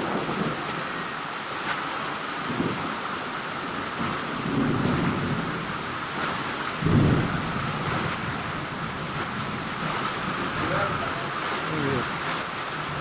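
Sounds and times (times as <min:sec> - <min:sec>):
heavy rain falling: 0:00.0 - 0:13.0
thunder rumbling: 0:04.0 - 0:13.0.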